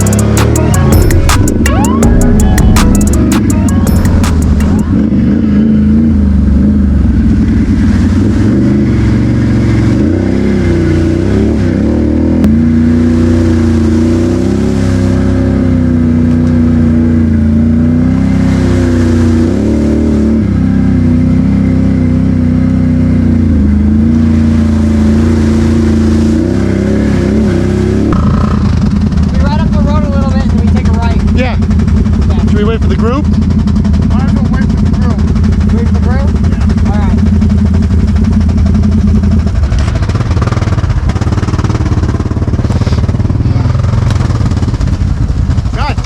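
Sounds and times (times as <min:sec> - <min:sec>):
atv engine revving: 0:00.0 - 0:46.0.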